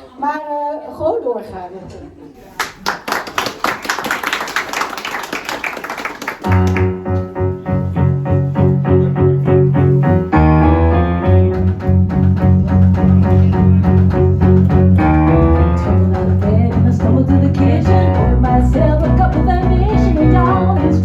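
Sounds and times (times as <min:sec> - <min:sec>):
live band playing instrumental: 0:10.0 - 0:21.0.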